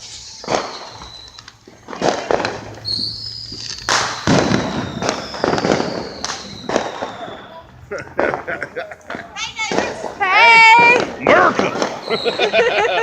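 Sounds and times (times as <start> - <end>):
thin high whistle: 0.0 - 1.9, 2.6 - 7.7, 12.0 - 12.7
fireworks bangs echoing: 0.0 - 13.0.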